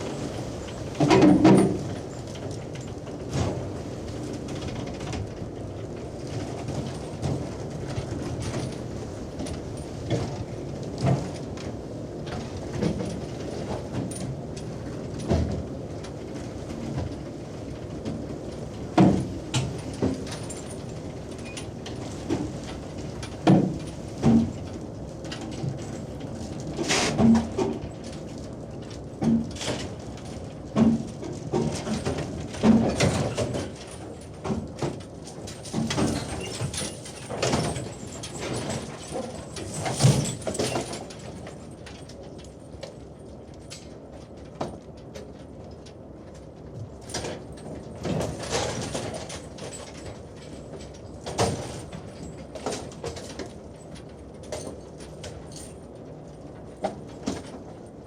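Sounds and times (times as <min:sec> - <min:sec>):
knocks and clanks: 0:30.8 - 0:41.5.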